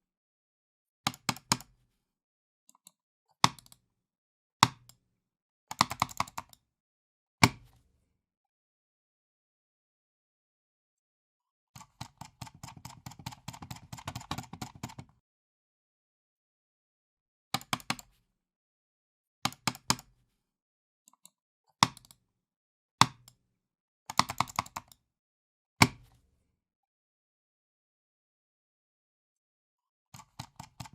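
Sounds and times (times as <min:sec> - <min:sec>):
computer mouse clicking: 0:02.7 - 0:03.8, 0:05.7 - 0:06.6, 0:11.8 - 0:15.1, 0:17.6 - 0:18.1, 0:24.1 - 0:25.0, 0:30.2 - 0:30.9.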